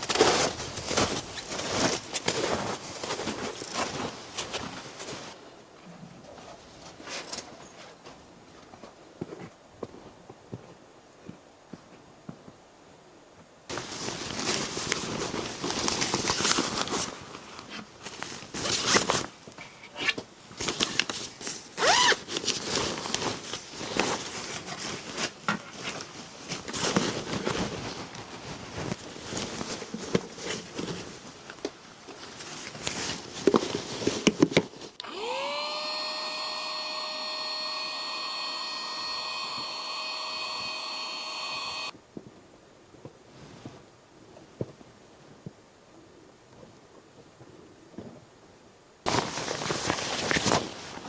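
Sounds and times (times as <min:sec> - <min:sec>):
scraping and rustling: 0:00.0 - 0:05.4, 0:49.1 - 0:51.0
small electric motor whining: 0:35.0 - 0:41.9.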